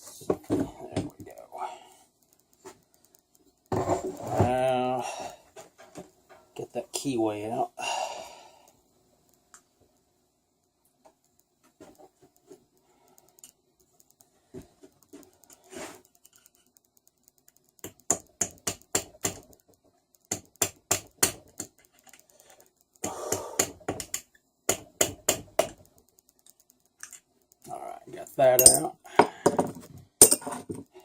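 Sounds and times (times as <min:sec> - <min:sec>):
hand tool clicking on metal: 0:15.1 - 0:29.6, 0:30.2 - 0:31.0.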